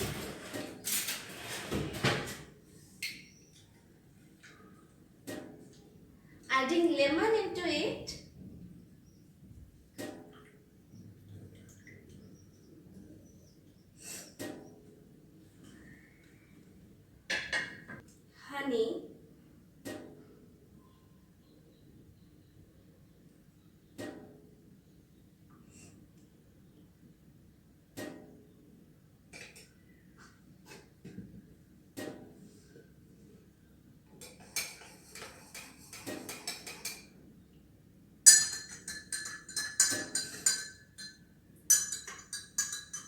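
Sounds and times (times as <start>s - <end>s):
faint high chirps: 20.8s - 23.9s
spoon clinking in a cup: 38.2s - 43.0s.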